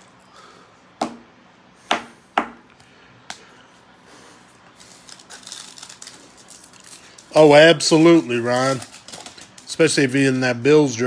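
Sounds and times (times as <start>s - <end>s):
cards rustling: 4.6s - 10.6s.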